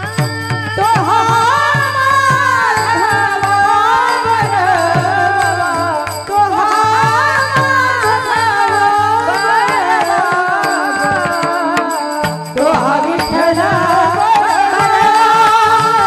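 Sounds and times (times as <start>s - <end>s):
woman singing devotional melody: 0.0s - 16.0s.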